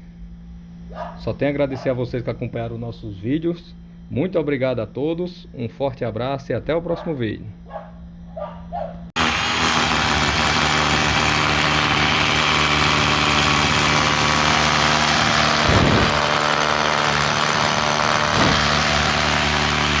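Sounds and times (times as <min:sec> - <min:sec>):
power tool motor running: 0:09.2 - 0:20.0.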